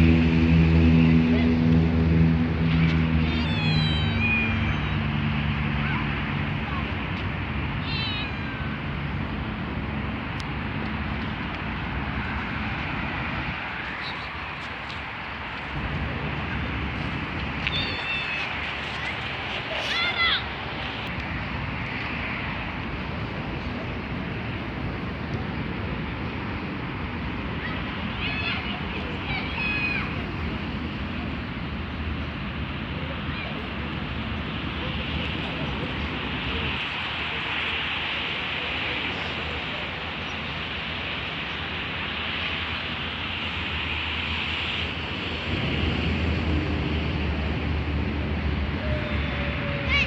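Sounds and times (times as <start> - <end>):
low rumble: 0.0 - 3.4
steady outdoor hiss: 0.0 - 50.0.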